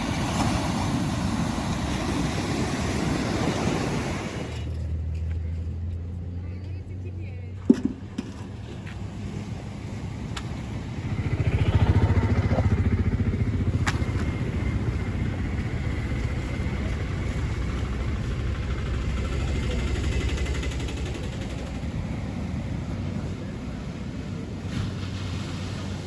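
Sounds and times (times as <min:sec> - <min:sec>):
engine running: 0:00.0 - 0:26.0.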